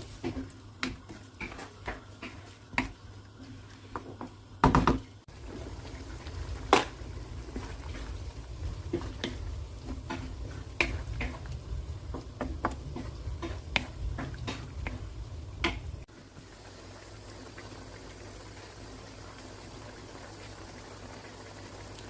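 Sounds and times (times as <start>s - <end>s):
cooking utensils clicking and knocking: 0.0s - 5.3s, 5.9s - 16.1s
steady low rumble: 5.3s - 16.1s.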